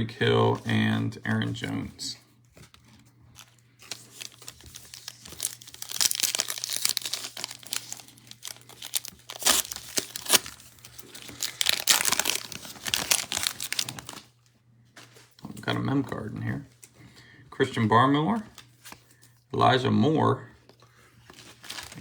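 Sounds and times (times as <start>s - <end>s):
plastic wrapper tearing and crinkling: 3.4s - 14.4s, 21.3s - 22.0s.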